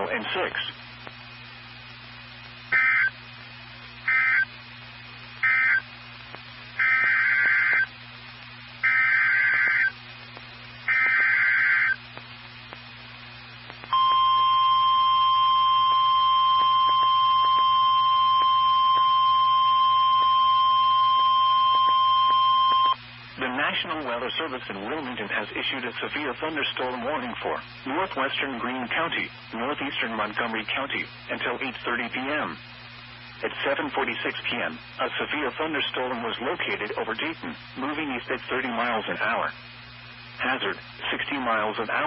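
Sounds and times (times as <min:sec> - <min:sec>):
digital data bursts: 0:02.7 - 0:03.2, 0:05.4 - 0:05.9, 0:06.8 - 0:07.9, 0:08.8 - 0:09.9, 0:10.9 - 0:12.0
steady warning alarm tone: 0:02.8 - 0:03.2, 0:04.1 - 0:04.5, 0:05.4 - 0:05.8, 0:06.8 - 0:07.9, 0:08.8 - 0:09.9, 0:10.9 - 0:12.0, 0:13.9 - 0:23.0.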